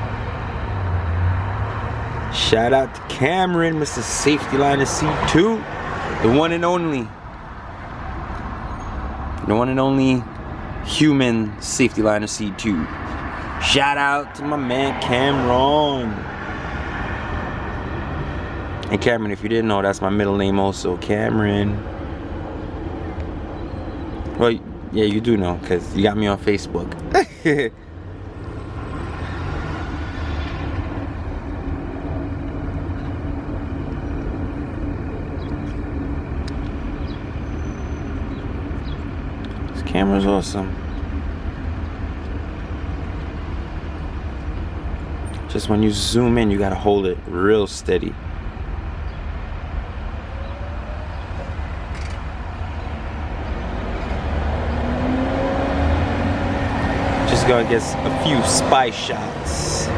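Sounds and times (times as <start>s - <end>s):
road noise: 0.0s - 59.9s
vehicle engine rumble: 0.0s - 59.9s.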